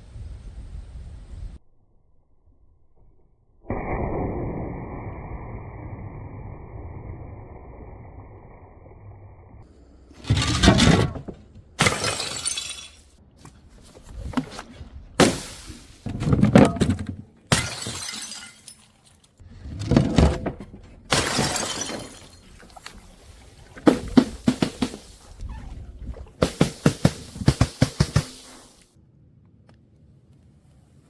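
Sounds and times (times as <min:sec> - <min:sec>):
glass bottles shattering on stairs: 0:11.8 - 0:13.1, 0:17.5 - 0:19.2, 0:21.1 - 0:22.7.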